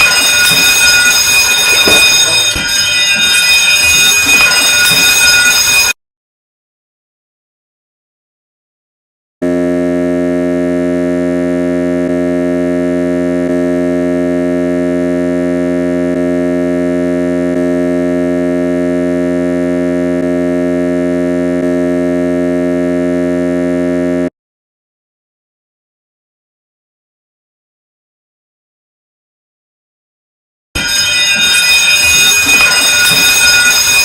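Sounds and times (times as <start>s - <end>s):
ship's alarm horn blast: 0.0s - 6.0s, 9.4s - 24.3s, 30.8s - 34.0s.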